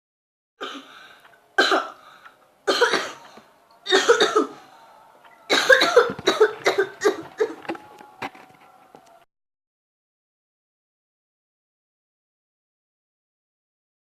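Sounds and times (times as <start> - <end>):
person coughing: 3.9 - 4.6, 5.5 - 7.6.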